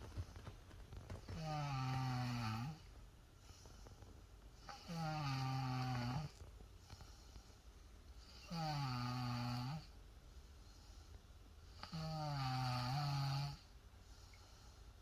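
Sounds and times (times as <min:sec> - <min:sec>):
child snoring: 0:01.2 - 0:02.9, 0:04.6 - 0:06.4, 0:08.2 - 0:10.0, 0:11.8 - 0:13.7.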